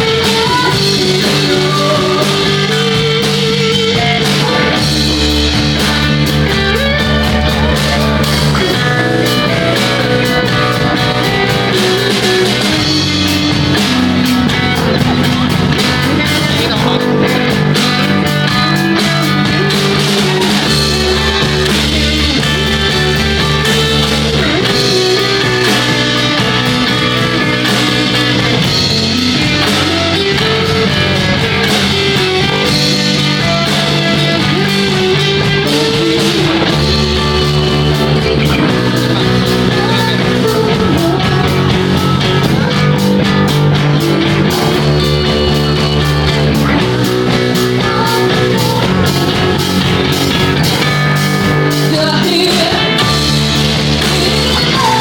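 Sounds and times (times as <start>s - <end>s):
bass guitar: 0.0s - 55.0s
drums with a steady beat: 0.0s - 55.0s
electric guitar: 0.0s - 55.0s
person singing: 0.0s - 55.0s.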